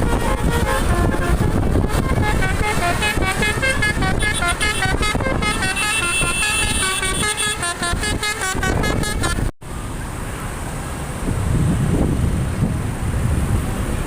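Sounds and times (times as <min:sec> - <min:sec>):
multi-tone air horn tune: 0:00.0 - 0:09.5
engine and road rumble: 0:00.0 - 0:14.0.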